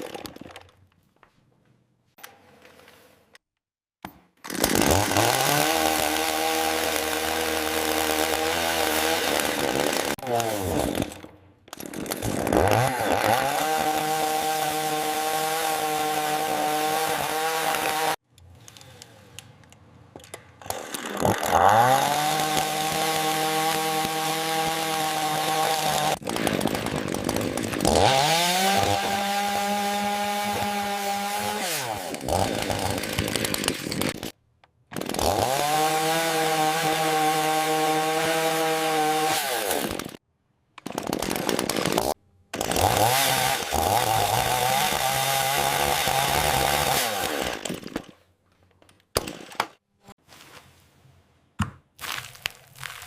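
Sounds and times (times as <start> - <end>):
chainsaw revving: 4.5 - 18.2, 20.6 - 34.3, 35.0 - 40.2, 40.9 - 47.9.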